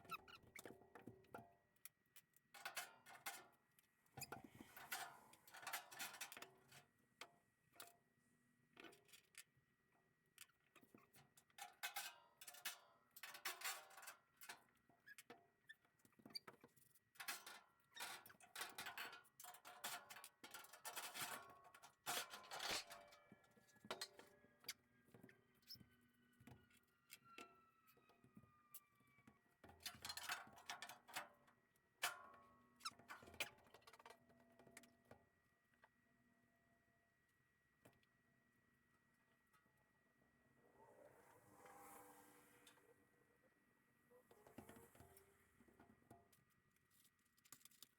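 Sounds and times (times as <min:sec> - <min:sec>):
slow falling squeaks: 0:25.6 - 0:29.3.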